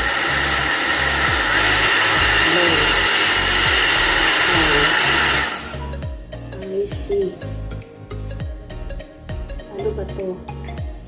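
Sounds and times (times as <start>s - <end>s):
hair dryer brush fan hissing: 0.0s - 6.1s.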